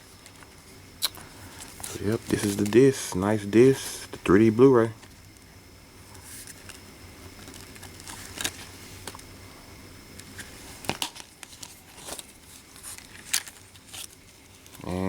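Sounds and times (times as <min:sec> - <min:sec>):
light crinkling: 0:00.2 - 0:04.3, 0:06.1 - 0:09.3, 0:10.1 - 0:14.9.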